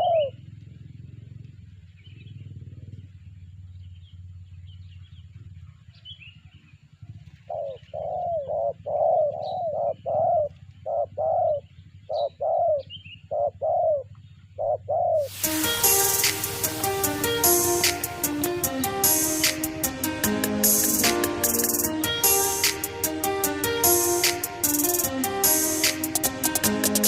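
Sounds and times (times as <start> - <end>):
dove cooing: 0.0 - 0.3, 7.2 - 18.6.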